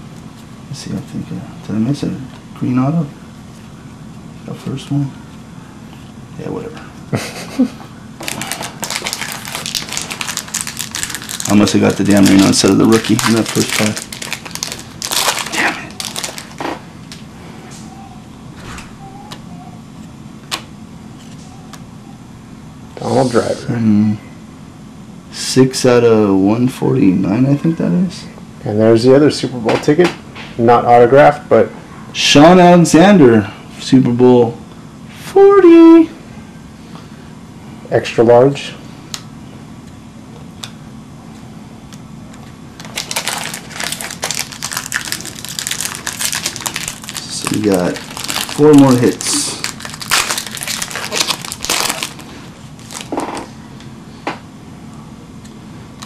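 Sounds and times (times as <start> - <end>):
foil wrapper crinkling and tearing: 8.2 - 16.6, 42.8 - 53.3.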